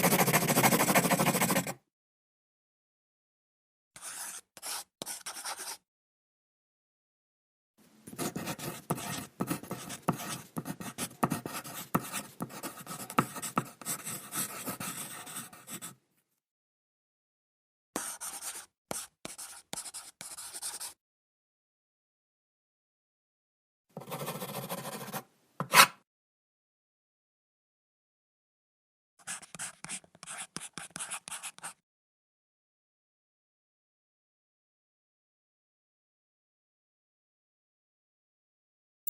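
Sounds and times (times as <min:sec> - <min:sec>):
pen scribbling on paper: 0:00.0 - 0:01.7, 0:04.0 - 0:05.8, 0:08.2 - 0:15.9, 0:18.0 - 0:21.0, 0:24.0 - 0:26.0, 0:29.3 - 0:31.8.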